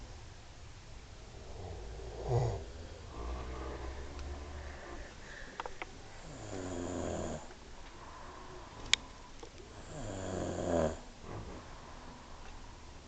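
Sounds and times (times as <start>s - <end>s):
men snoring: 1.4s - 5.6s, 6.2s - 7.5s, 9.7s - 11.1s.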